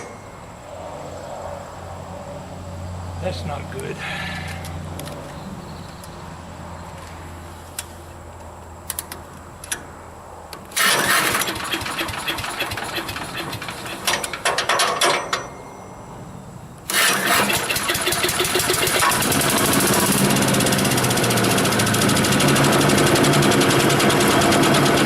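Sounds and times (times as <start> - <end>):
small engine pull starting: 10.7 - 15.0, 16.9 - 25.0
small engine running unevenly: 10.8 - 14.3, 16.9 - 25.0.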